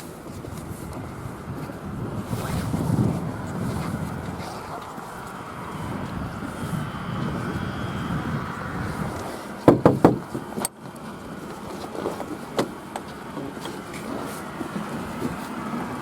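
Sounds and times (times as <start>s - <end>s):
steady low rumble: 0.0s - 9.6s
knocks on a cab door: 9.7s - 10.3s.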